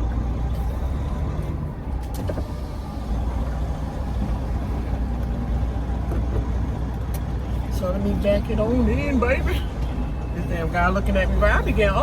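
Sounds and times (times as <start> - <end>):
diesel truck engine humming: 0.0 - 12.0.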